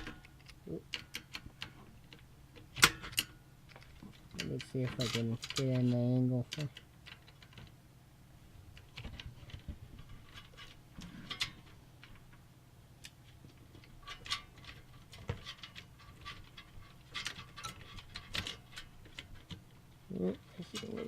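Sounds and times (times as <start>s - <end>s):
clicks and scrapes of computer parts: 0.0s - 7.7s, 8.7s - 12.3s, 13.1s - 19.7s
faint low hum: 0.0s - 21.0s.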